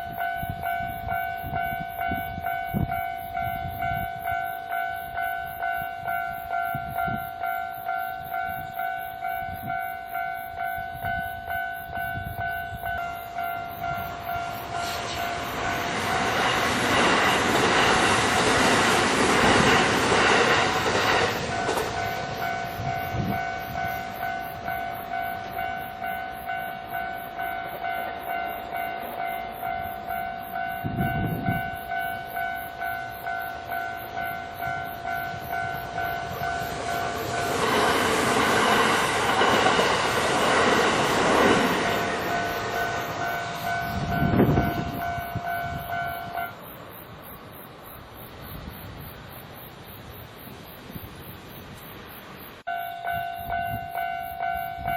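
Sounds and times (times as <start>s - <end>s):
train passing: 0.0s - 54.9s
level crossing bell ringing: 42.0s - 46.6s, 52.7s - 54.9s.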